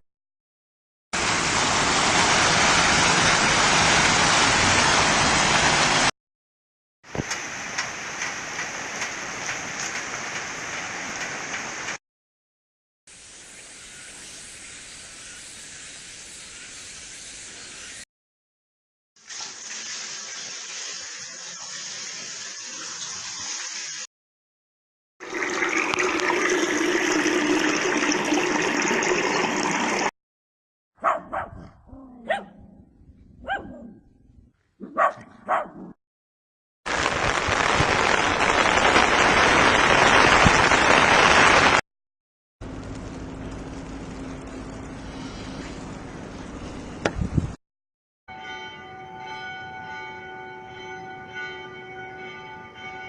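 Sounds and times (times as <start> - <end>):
rain on an umbrella: 1.2 - 6.1, 7.1 - 12.0, 36.9 - 41.8, 42.6 - 45.2
shower spraying: 19.2 - 24.1
water running into a washbasin: 19.2 - 24.1, 25.2 - 30.1
dog barking: 31.0 - 32.6, 33.4 - 34.1, 34.8 - 36.0.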